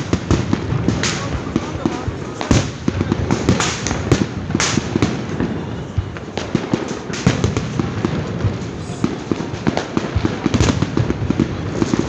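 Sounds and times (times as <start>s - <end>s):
fireworks crackling and banging: 0.0s - 12.0s.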